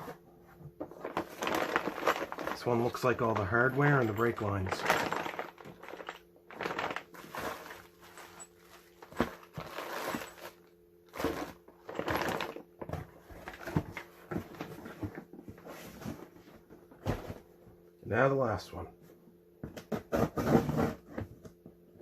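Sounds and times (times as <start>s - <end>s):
packaging rustling and crinkling: 1.0s - 3.6s, 4.6s - 12.6s.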